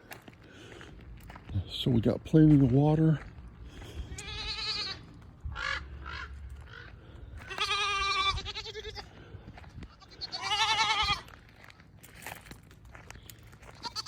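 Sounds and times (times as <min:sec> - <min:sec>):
young goats bleating: 0:03.8 - 0:11.4, 0:13.6 - 0:14.0.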